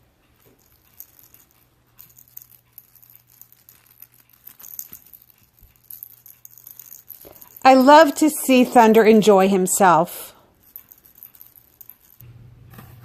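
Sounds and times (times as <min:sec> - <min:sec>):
cat wand toy rattling and jingling: 0:00.3 - 0:09.8, 0:10.4 - 0:12.2.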